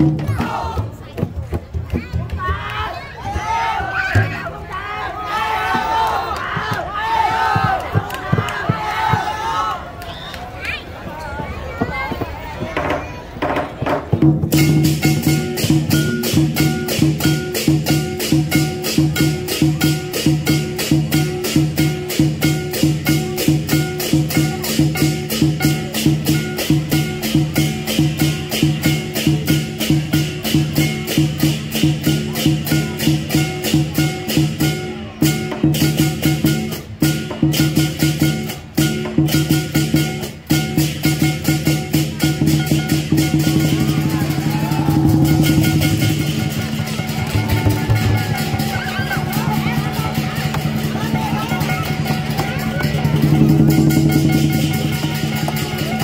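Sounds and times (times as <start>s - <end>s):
drum beating fast rhythm: 0.0s - 4.6s, 5.6s - 9.5s, 11.9s - 56.0s
cymbals clashing: 14.5s - 56.0s.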